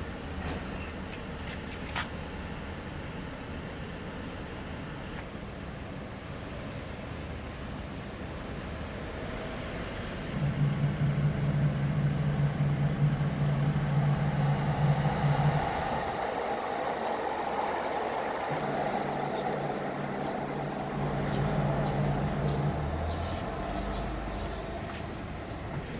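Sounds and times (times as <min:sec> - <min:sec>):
constant rushing noise: 0:10.4 - 0:25.9
motor humming: 0:10.4 - 0:25.9.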